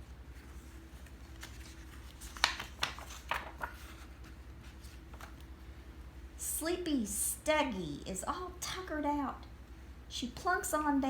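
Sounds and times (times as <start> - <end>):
faint steady hum: 0.0 - 11.0
handling noise rustles and taps: 0.4 - 5.5.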